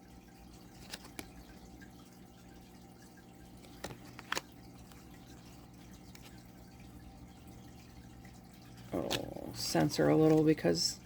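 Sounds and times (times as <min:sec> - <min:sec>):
faint room hum: 0:00.0 - 0:11.0
cards clicking on handling: 0:00.8 - 0:01.3, 0:03.6 - 0:05.0.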